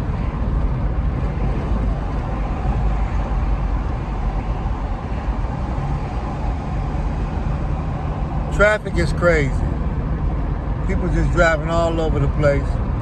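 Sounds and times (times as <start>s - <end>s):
car driving rumble: 0.0s - 13.0s.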